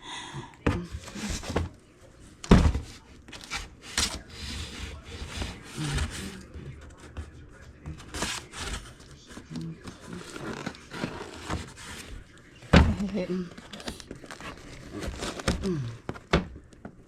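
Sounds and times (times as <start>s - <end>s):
cardboard box thump: 2.4s - 3.0s
cardboard boxes rubbing and scraping: 2.7s - 7.2s, 7.9s - 12.2s.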